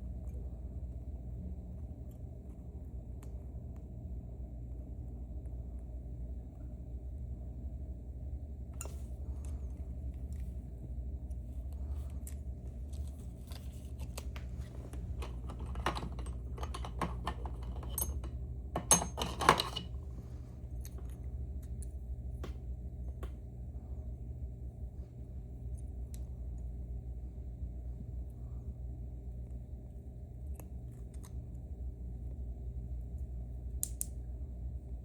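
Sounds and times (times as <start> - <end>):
low hum: 0.0 - 35.0
lock pick clicking and scraping: 14.9 - 20.0.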